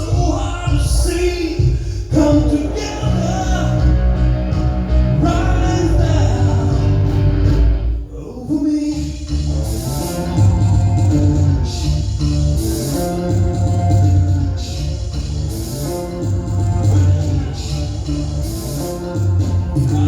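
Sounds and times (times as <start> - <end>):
person singing: 0.0 - 14.9
rock band playing: 2.2 - 7.9, 9.3 - 20.0.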